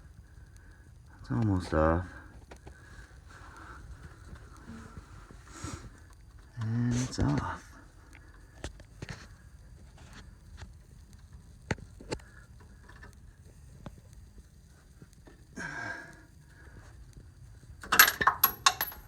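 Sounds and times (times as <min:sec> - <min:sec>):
tools and parts handled: 0:17.8 - 0:19.0.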